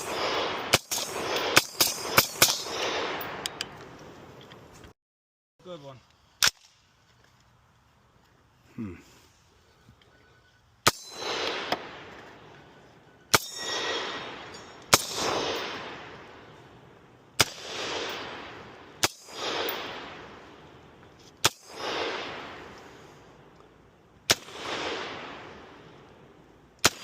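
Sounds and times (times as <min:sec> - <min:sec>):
gunshots: 0:00.0 - 0:03.6, 0:10.8 - 0:12.2, 0:13.3 - 0:16.5, 0:17.4 - 0:20.5, 0:21.4 - 0:22.9, 0:24.3 - 0:25.8, 0:26.8 - 0:27.0
gunshot echo rolling off valley: 0:10.9 - 0:12.5, 0:13.3 - 0:16.5, 0:17.4 - 0:23.0, 0:24.3 - 0:26.1.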